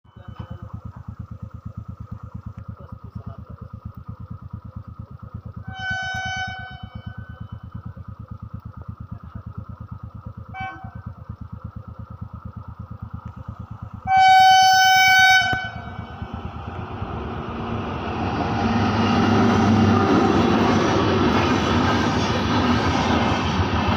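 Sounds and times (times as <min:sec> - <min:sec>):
locomotive engine throb: 0:00.0 - 0:23.9
moving train rumble: 0:00.1 - 0:23.9
train horn blasts: 0:05.6 - 0:07.5, 0:10.5 - 0:11.1, 0:14.0 - 0:16.4.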